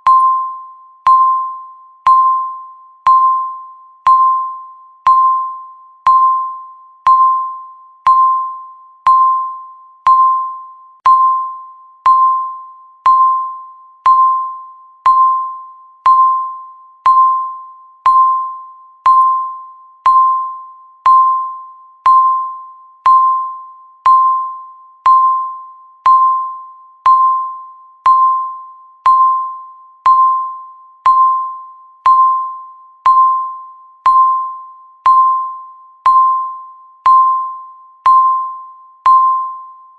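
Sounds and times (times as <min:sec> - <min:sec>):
countdown timer beeping: 0:00.0 - 0:39.8.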